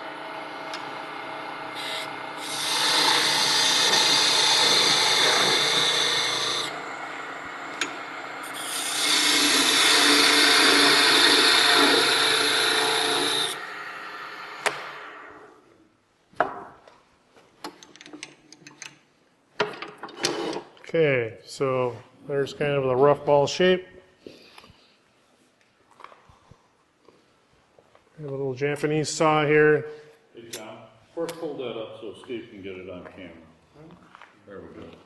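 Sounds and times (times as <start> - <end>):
wood lathe running: 0.0 - 15.5
parting tool cutting wood: 0.6 - 15.3.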